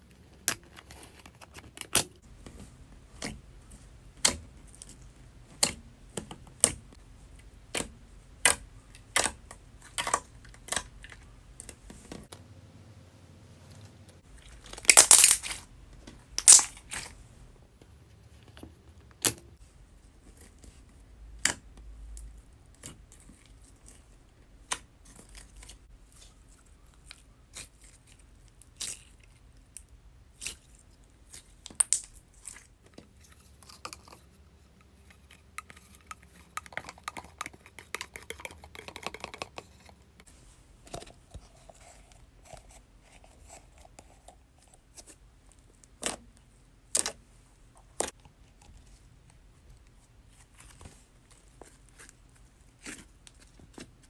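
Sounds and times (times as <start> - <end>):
slime squished by hand: 14.6 - 15.6.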